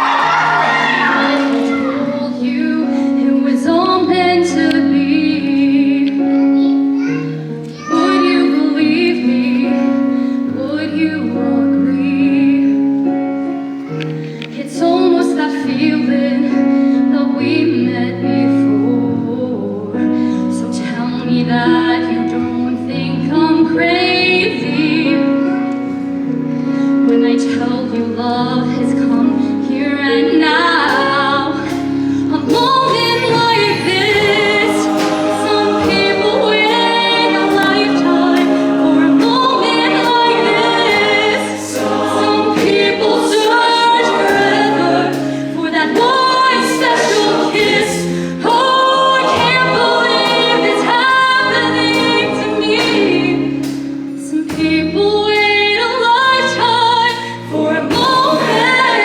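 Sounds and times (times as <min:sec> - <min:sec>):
choir singing in harmony: 0:00.0 - 0:06.1, 0:28.8 - 0:59.0
sharp percussive hits: 0:32.5 - 0:45.4.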